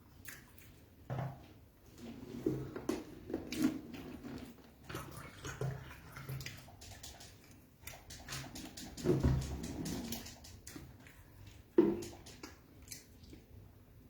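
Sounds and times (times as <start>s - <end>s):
wet chewing and lip-smacking: 3.6s - 9.4s, 10.0s - 13.7s.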